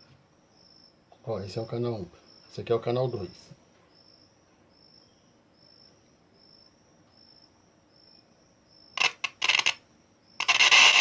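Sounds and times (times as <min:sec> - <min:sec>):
faint high-pitched pulsing chirp: 0:03.8 - 0:09.0
radio static hissing from loudspeaker: 0:09.0 - 0:09.8, 0:10.4 - 0:11.0.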